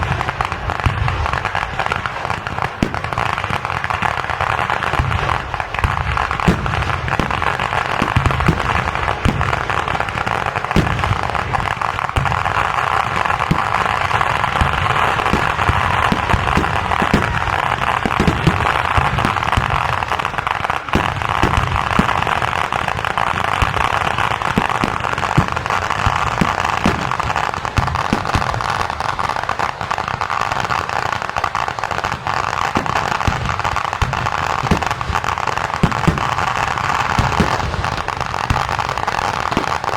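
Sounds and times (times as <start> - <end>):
deep fireworks booms: 0.0 - 39.9
firecrackers crackling: 0.0 - 39.9.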